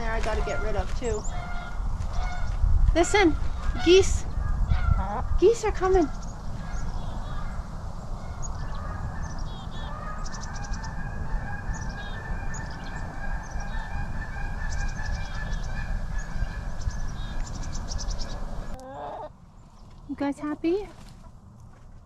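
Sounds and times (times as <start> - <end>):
geese honking: 0.0 - 2.5, 8.2 - 19.3.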